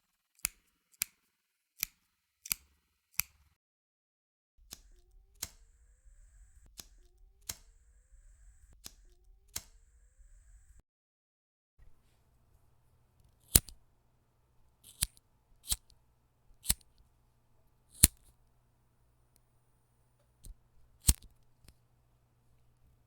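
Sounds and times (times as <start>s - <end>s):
lighter clicking: 12.5s - 13.9s, 14.6s - 17.1s, 17.8s - 18.5s, 20.4s - 21.8s.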